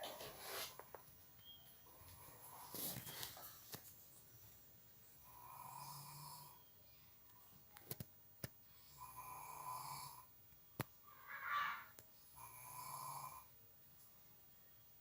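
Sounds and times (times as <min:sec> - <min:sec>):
slow snoring: 0:05.2 - 0:06.6, 0:08.9 - 0:10.3, 0:12.3 - 0:13.6.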